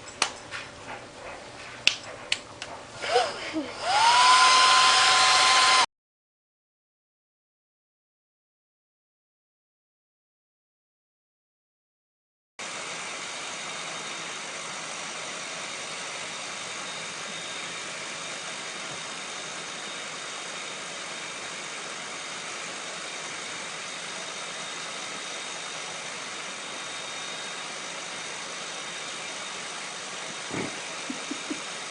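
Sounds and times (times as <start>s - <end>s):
hair dryer running: 1.9s - 5.9s, 12.6s - 31.9s.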